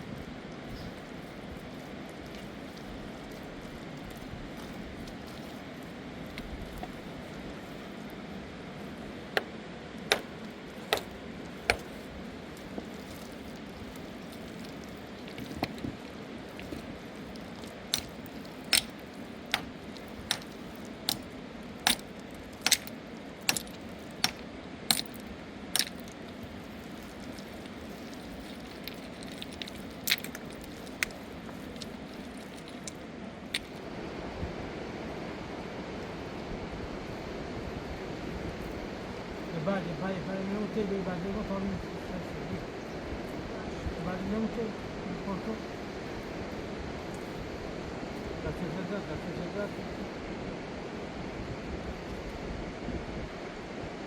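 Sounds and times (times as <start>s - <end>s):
river water rushing: 0.0s - 35.6s.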